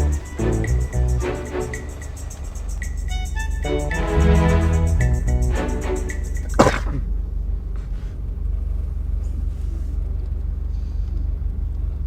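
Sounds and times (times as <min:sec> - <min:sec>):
car idling: 0:00.0 - 0:09.4.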